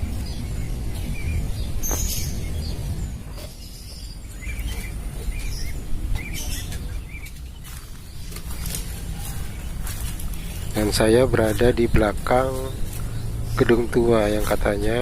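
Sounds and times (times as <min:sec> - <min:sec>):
small birds chirping: 0:00.0 - 0:15.0
steady low rumble: 0:00.0 - 0:15.0.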